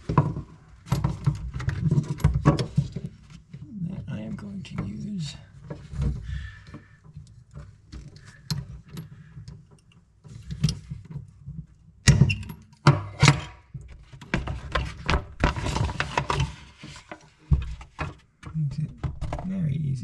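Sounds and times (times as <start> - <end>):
scraping and rustling: 13.9 - 18.3.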